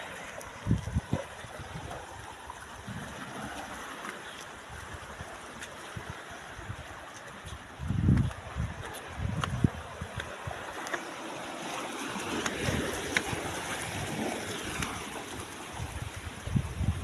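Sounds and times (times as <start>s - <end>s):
rushing water: 0.0s - 17.0s.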